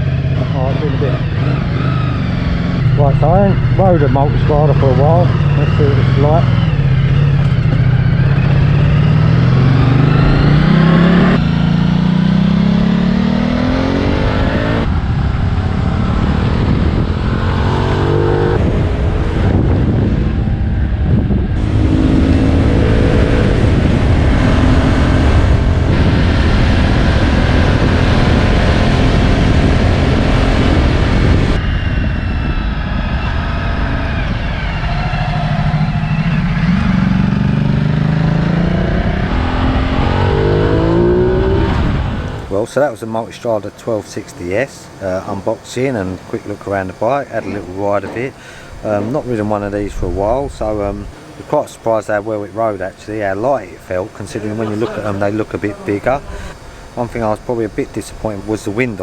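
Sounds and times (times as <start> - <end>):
motorcycle engine accelerating: 0.0 - 42.7
wind rush on microphone: 13.4 - 42.6, 47.2 - 59.0.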